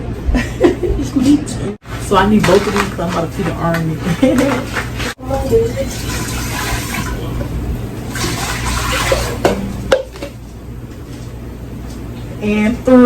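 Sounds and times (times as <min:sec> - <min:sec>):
tap water running into pot: 0:04.0 - 0:10.4.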